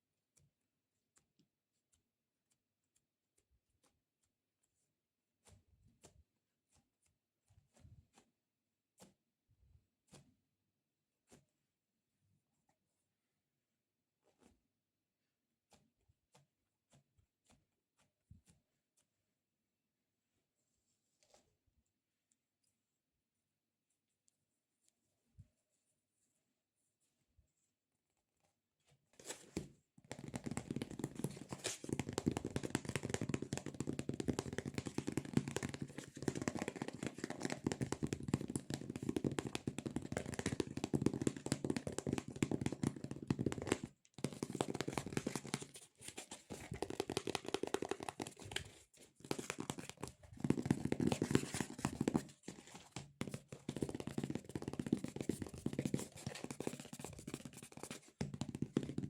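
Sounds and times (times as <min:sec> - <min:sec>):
fingers tapping squishy toy: 0:29.6 - 0:59.0.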